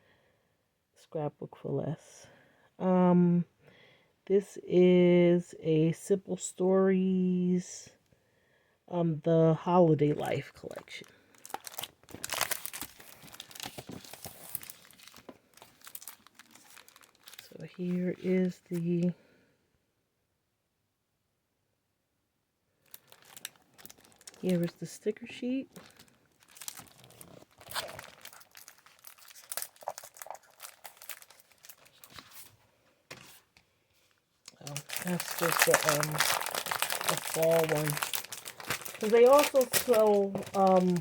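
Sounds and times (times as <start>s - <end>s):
packaging crinkling and rustling: 10.2s - 19.0s, 22.8s - 41.0s.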